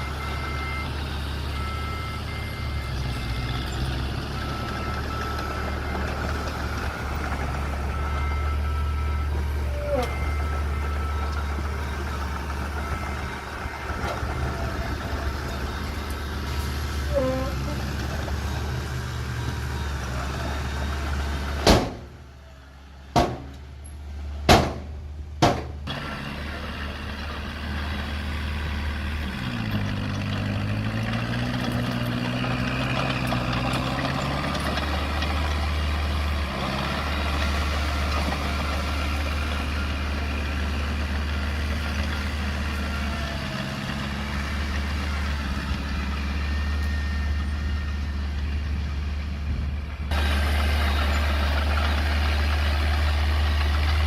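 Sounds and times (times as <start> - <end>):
sharp knocks: 23.2 - 23.6, 24.5 - 25.8
earthmoving machine engine running: 25.9 - 54.0.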